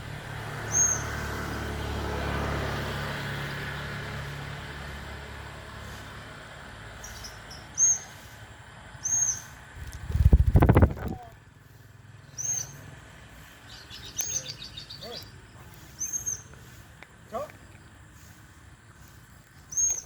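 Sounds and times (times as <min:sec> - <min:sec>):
passing motor vehicle hum: 0:00.0 - 0:20.0
lovebird chirps: 0:00.6 - 0:01.2, 0:07.0 - 0:08.3, 0:09.0 - 0:09.6, 0:12.2 - 0:12.9, 0:13.6 - 0:16.6, 0:19.5 - 0:20.0.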